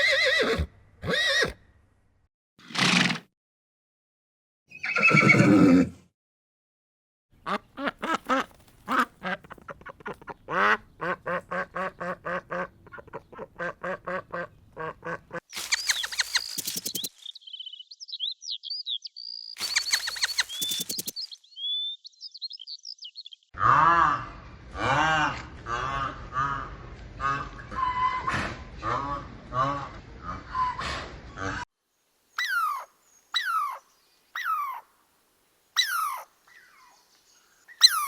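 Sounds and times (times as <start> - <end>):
horse whinny: 0.0 - 1.6, 2.6 - 3.2, 4.7 - 6.0
high-pitched chirping calls: 15.5 - 23.5, 32.4 - 34.8, 35.8 - 37.1, 37.7 - 38.0.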